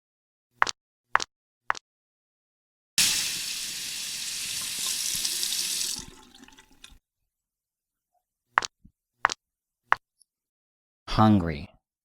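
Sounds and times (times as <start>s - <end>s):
tap running into sink: 3.0s - 7.0s
water dripping: 3.0s - 7.0s.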